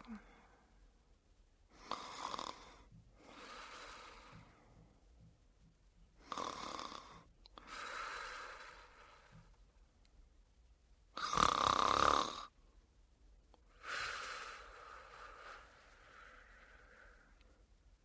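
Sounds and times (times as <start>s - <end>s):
woman snoring: 1.8s - 4.4s, 6.2s - 9.3s, 11.2s - 12.5s.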